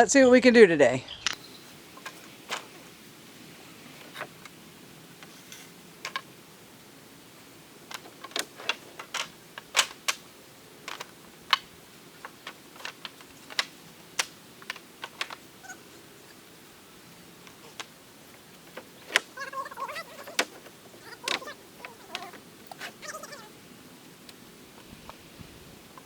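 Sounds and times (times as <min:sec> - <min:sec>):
wooden boards clacking: 0:01.9 - 0:03.0, 0:05.2 - 0:06.4, 0:07.8 - 0:16.6, 0:17.3 - 0:23.4.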